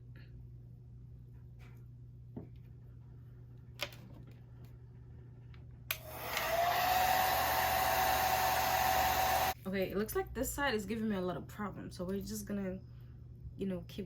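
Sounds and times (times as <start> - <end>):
hair dryer switch click: 5.9 - 9.4
hair dryer blowing air: 5.9 - 9.6.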